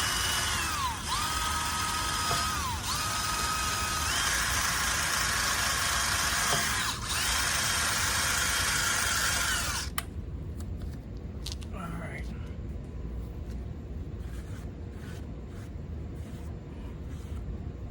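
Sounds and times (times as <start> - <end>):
power tool motor whining: 0.0 - 10.0.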